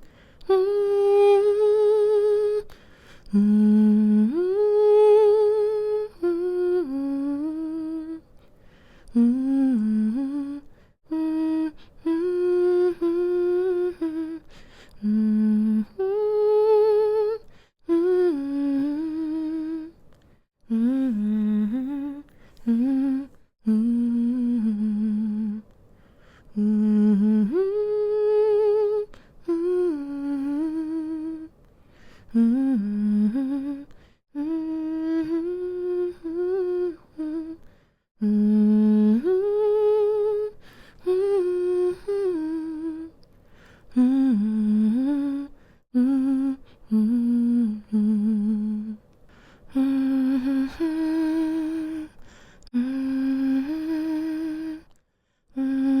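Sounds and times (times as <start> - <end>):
woman humming a lullaby: 0.0 - 2.7, 9.1 - 20.0, 32.3 - 37.6.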